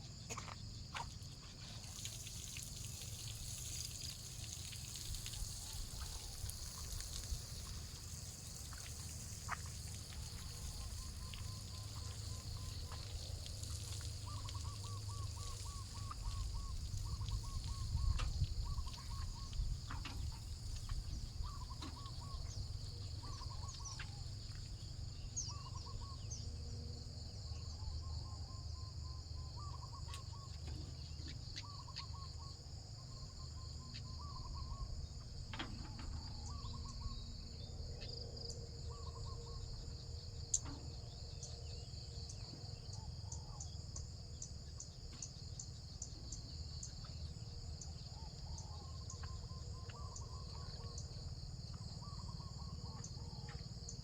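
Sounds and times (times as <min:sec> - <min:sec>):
insects trilling: 0:00.0 - 0:54.0
bird calling: 0:13.8 - 0:24.6, 0:25.2 - 0:26.4, 0:29.5 - 0:32.6, 0:35.6 - 0:38.2, 0:38.8 - 0:39.7.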